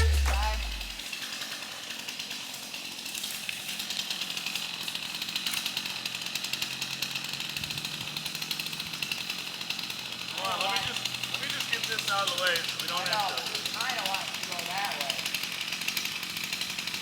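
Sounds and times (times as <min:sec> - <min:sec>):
chainsaw running: 0:00.0 - 0:17.0.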